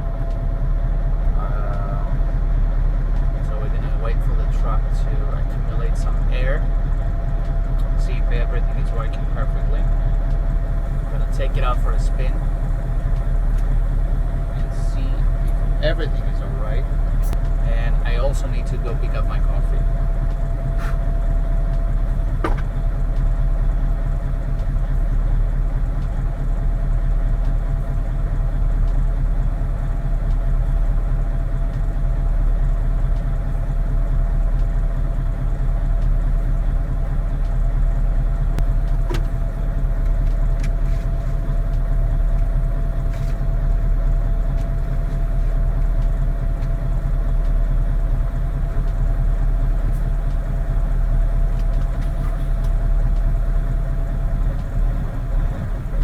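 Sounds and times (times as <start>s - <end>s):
diesel truck engine running: 0.0s - 56.0s.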